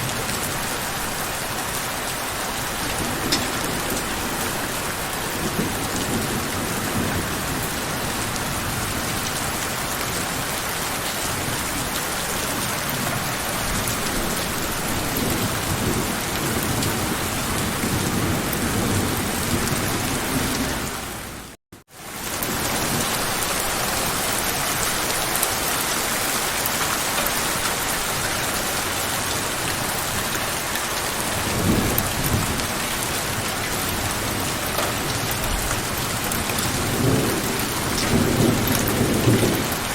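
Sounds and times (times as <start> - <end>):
heavy rainfall: 0.0 - 39.9
low rolls of thunder: 2.6 - 10.6, 11.3 - 21.1, 31.3 - 39.9.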